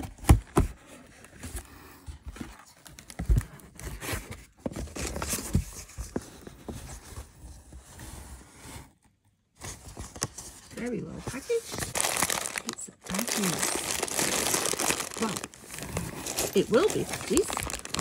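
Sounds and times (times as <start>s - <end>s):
packaging rustling and tearing: 11.5s - 18.0s.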